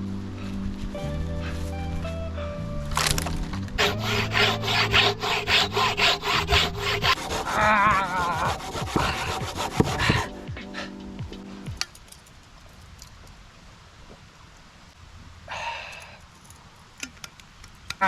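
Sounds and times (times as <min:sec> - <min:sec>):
background music with held tones: 0:00.0 - 0:12.0
hand saw cutting wood: 0:03.8 - 0:10.5.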